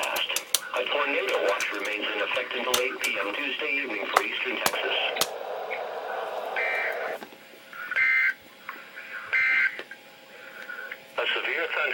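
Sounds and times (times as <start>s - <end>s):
buzzy two-tone data bursts: 4.8s - 7.2s.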